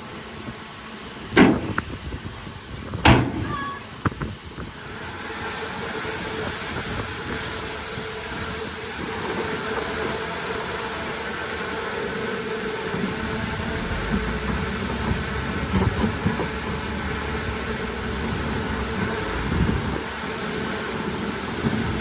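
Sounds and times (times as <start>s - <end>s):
heavy machinery engine noise: 0.9s - 22.0s
short metal clanks: 3.0s - 3.8s
deep rumble: 13.1s - 20.0s.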